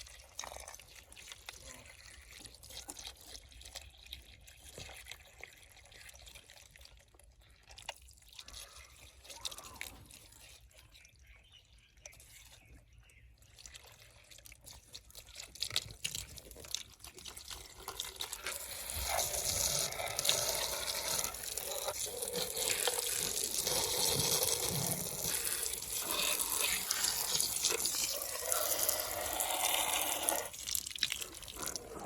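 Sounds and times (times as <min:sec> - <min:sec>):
water running and splashing: 0:13.7 - 0:32.0.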